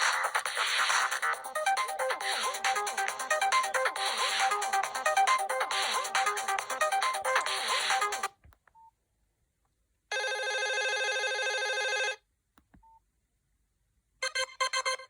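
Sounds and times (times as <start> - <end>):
phone ringtone buzzing: 10.1 - 12.2, 14.2 - 15.0.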